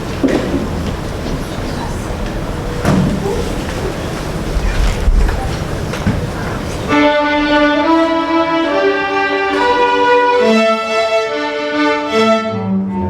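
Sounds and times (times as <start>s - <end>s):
room noise: 0.0s - 13.0s
string orchestra playing: 6.8s - 13.0s.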